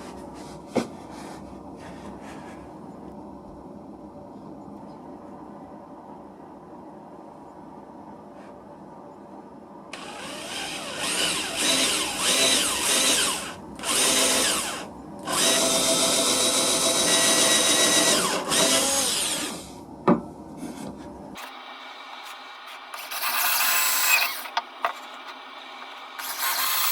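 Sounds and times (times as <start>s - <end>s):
electric drill boring into wood: 10.0s - 19.7s, 23.0s - 24.6s, 26.2s - 26.9s.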